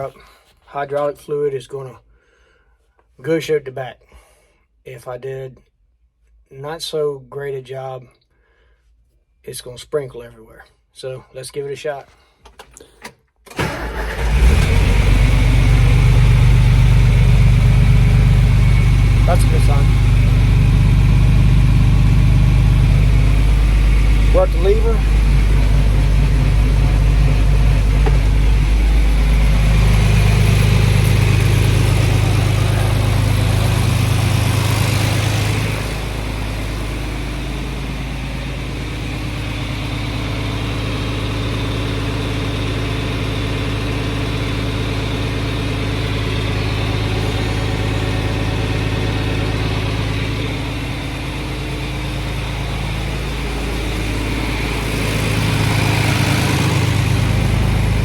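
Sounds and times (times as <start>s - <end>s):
tractor diesel engine running: 13.5s - 58.0s.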